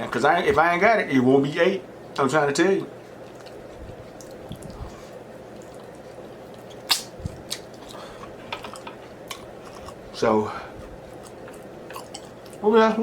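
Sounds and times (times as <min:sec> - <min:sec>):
close chewing with wet mouth sounds: 0:02.6 - 0:13.0
sharp mouth smacks: 0:06.8 - 0:07.7.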